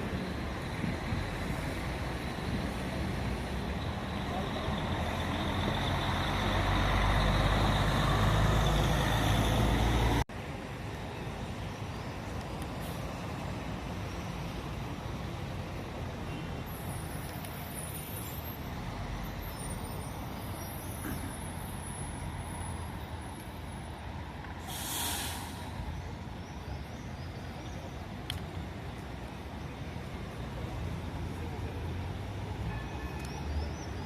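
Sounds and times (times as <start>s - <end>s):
diesel bus engine rumbling: 0.0s - 11.6s
air brake hiss: 24.6s - 25.8s.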